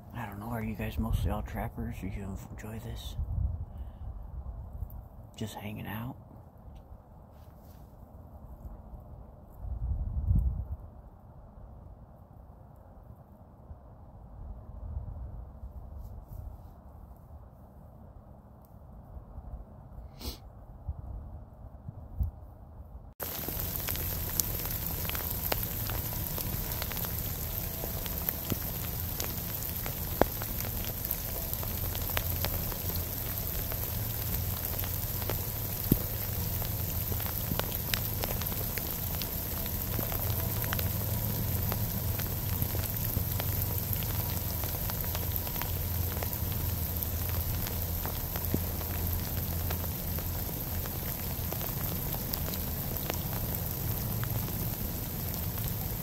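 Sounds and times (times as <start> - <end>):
steady rain falling: 0.0 - 1.6, 23.2 - 56.0
low rumble: 20.8 - 56.0.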